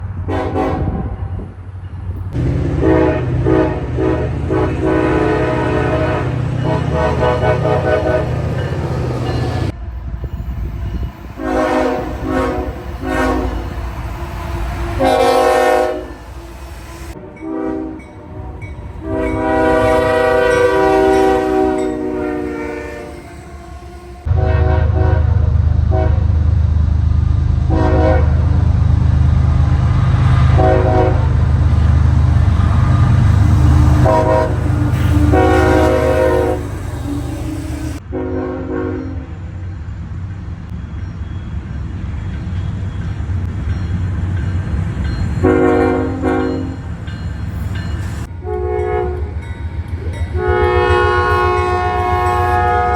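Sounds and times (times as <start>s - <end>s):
locomotive air horn blasts: 0.3s - 1.2s, 2.4s - 9.7s, 10.8s - 26.3s, 27.7s - 28.6s, 30.5s - 39.3s, 45.4s - 46.8s, 48.3s - 52.9s
loud low rumble: 2.3s - 16.6s.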